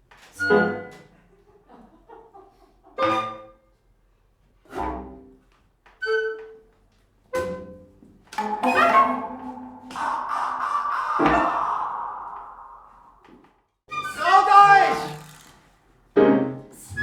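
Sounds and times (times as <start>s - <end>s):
instruments playing held passage: 8.4s - 13.4s.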